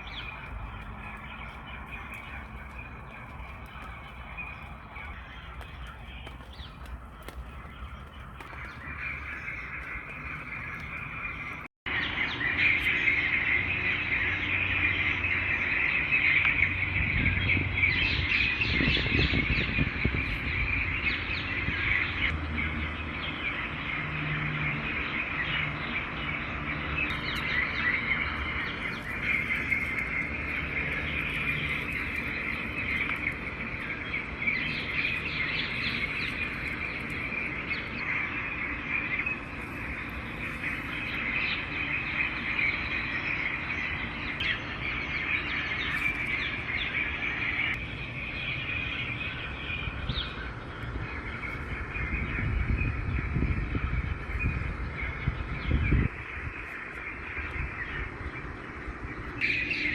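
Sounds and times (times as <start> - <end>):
birds chirping: 0.0 - 11.7, 28.7 - 50.5.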